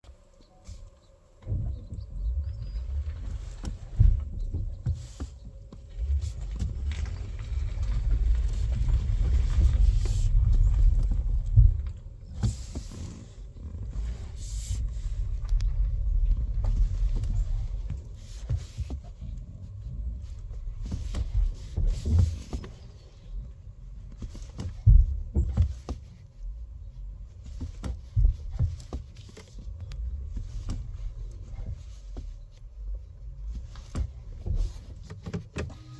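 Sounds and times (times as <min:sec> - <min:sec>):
steady low rumble: 0:00.0 - 0:35.9
car thumps and knocks: 0:01.4 - 0:35.9.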